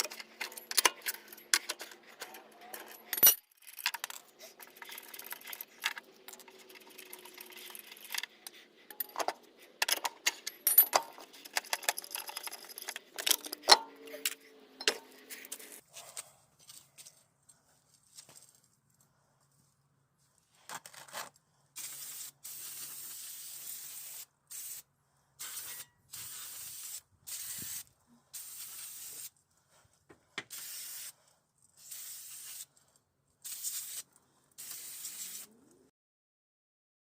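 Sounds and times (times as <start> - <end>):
aerosol spray can hissing: 21.8 - 24.8, 25.4 - 29.3, 30.4 - 31.2, 31.8 - 32.7, 33.4 - 35.5.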